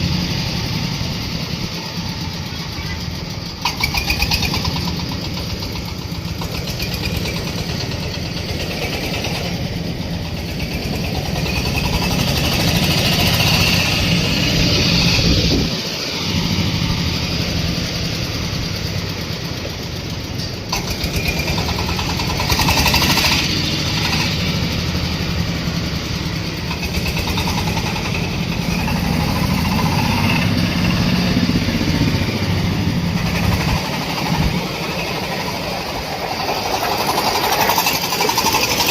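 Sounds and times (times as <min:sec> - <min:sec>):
corn sheller machine clattering: 0:03.5 - 0:10.0, 0:20.3 - 0:24.7, 0:33.1 - 0:38.9.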